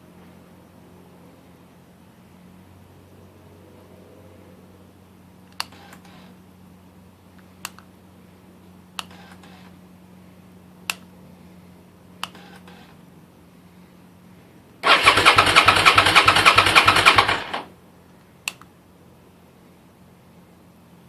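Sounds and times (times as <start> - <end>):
steady low hum: 0.0 - 21.0
sharp clicks: 5.5 - 6.1, 10.8 - 11.1, 12.2 - 12.8, 18.4 - 18.7.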